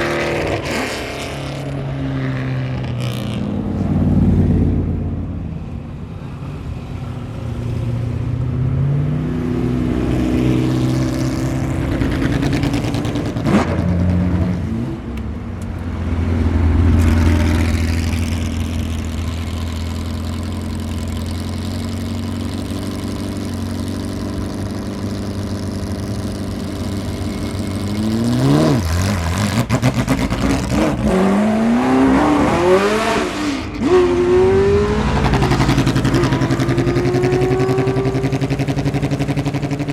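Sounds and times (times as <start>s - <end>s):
racing engine accelerating: 27.6s - 39.9s.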